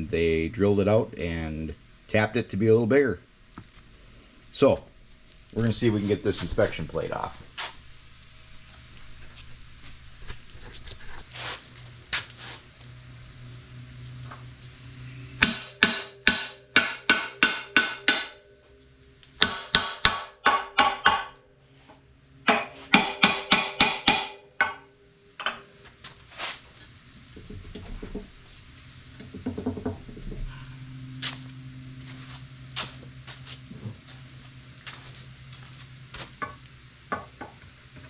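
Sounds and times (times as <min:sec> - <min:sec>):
hammer ringing on metal plate: 0:15.4 - 0:18.6.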